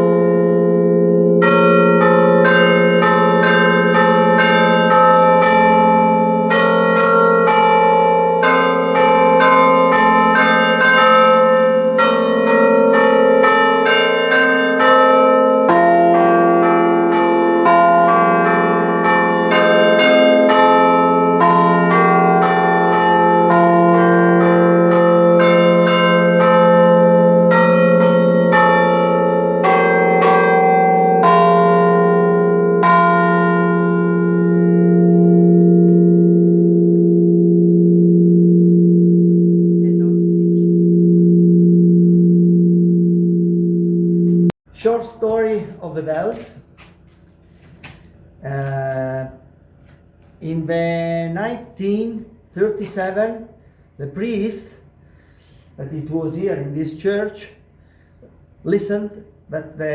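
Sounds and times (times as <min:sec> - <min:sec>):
church bells playing a tune: 0:00.0 - 0:42.4.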